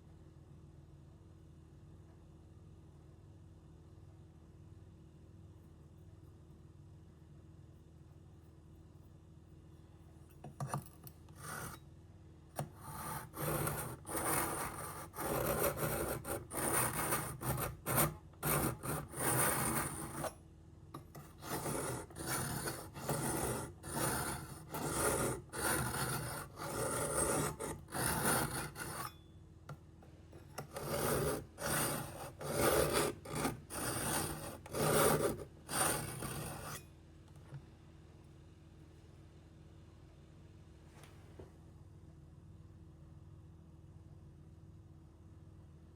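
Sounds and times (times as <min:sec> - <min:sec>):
knife scraping on sharpener: 0:10.4 - 0:11.8, 0:12.6 - 0:20.4, 0:21.0 - 0:29.2, 0:30.4 - 0:36.9.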